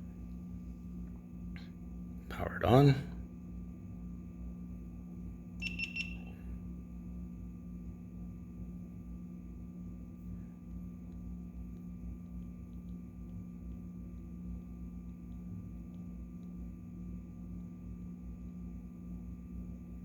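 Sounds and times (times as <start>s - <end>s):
steady low hum: 0.0s - 20.0s
faint ticks: 10.7s - 14.2s.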